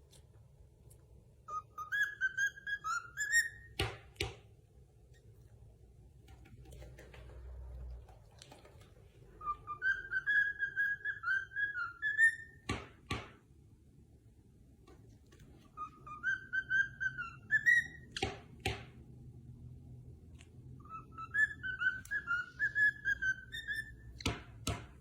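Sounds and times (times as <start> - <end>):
parrot whistling a tune: 1.5 - 3.8, 9.4 - 12.7, 15.7 - 18.2, 20.8 - 24.3.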